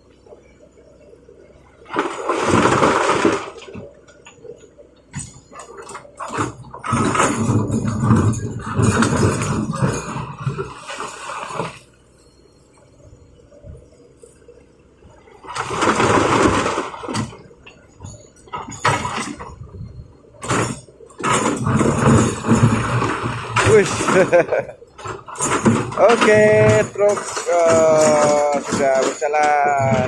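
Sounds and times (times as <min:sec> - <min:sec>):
rocks crashing into truck bed: 0:01.8 - 0:04.0, 0:05.1 - 0:11.8, 0:15.4 - 0:19.8, 0:20.4 - 0:30.0.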